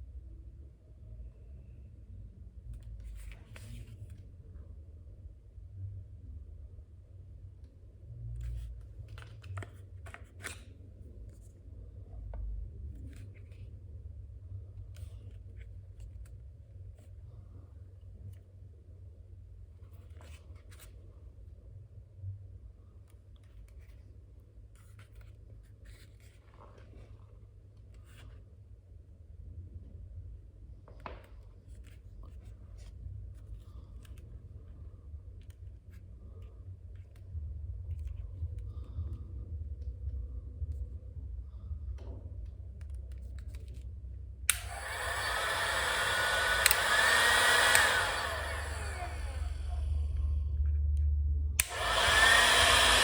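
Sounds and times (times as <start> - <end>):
steady low hum: 27.0 - 53.0.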